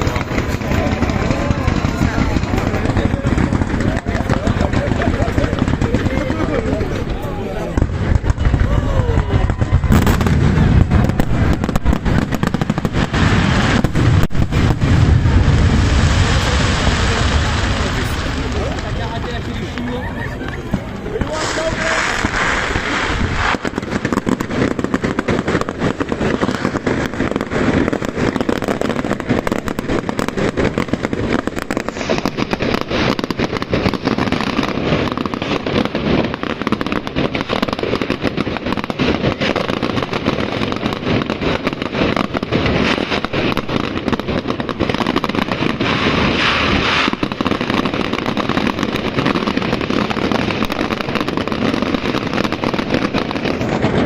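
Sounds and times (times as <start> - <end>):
fireworks banging and crackling: 0.0 - 54.0.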